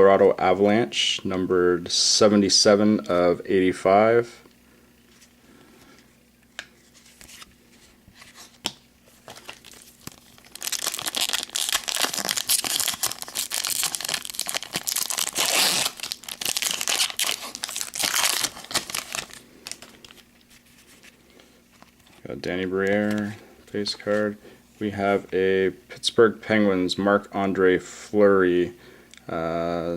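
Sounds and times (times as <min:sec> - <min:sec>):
wrapper tearing and crinkling: 0:09.1 - 0:21.1.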